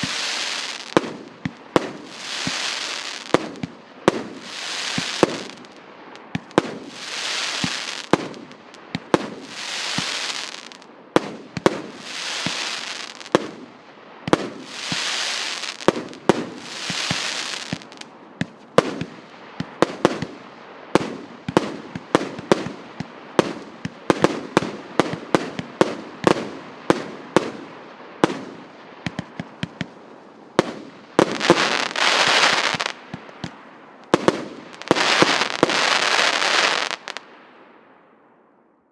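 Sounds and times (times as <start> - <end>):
high firework hissing: 0.0 - 5.8, 6.4 - 8.4, 9.0 - 10.8, 11.8 - 13.4, 14.6 - 18.0, 31.2 - 33.3, 34.7 - 37.2
firework shots and bursts: 0.0 - 13.7, 14.3 - 29.9, 30.6 - 37.2.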